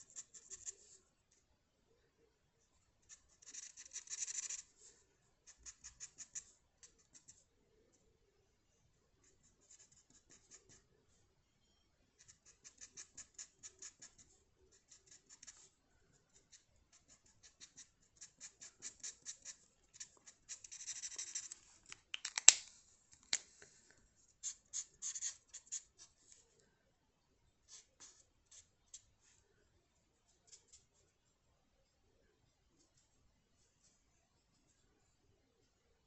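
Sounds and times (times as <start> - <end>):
pencil scratching on paper: 0.0 - 1.0, 3.0 - 7.4, 9.2 - 10.9, 12.2 - 21.6, 24.4 - 26.2.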